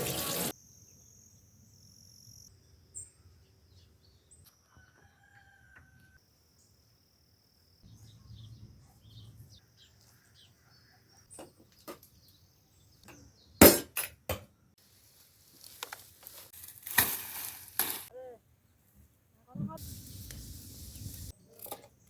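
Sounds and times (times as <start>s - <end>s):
small birds chirping: 7.6s - 13.6s
hissing noise: 19.8s - 21.4s.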